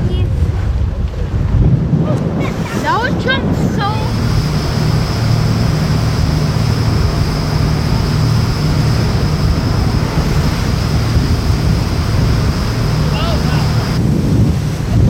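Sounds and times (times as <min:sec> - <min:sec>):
boat engine running: 0:00.0 - 0:15.0
water rushing along hull: 0:00.0 - 0:15.0
wind buffeting microphone: 0:00.0 - 0:15.0
thin high whine: 0:03.8 - 0:14.0.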